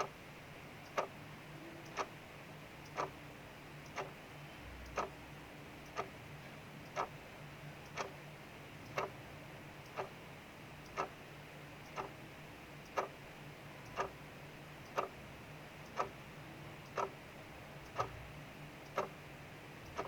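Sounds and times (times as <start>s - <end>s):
mechanical clock ticking: 0.8s - 1.2s, 1.9s - 2.2s, 2.8s - 3.2s, 3.8s - 4.2s, 4.8s - 5.2s, 5.8s - 6.2s, 6.9s - 7.2s, 7.8s - 8.2s, 8.8s - 9.2s, 9.8s - 10.2s, 10.8s - 11.2s, 11.8s - 12.2s, 12.8s - 13.2s, 13.8s - 14.2s, 14.8s - 15.2s, 15.8s - 16.2s, 16.8s - 17.2s, 17.8s - 18.2s, 18.8s - 19.2s, 19.8s - 20.0s.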